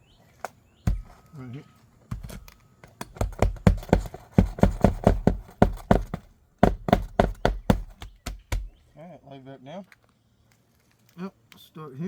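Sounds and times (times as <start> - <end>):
hammer striking a nail: 0.9 - 1.3, 2.1 - 8.8.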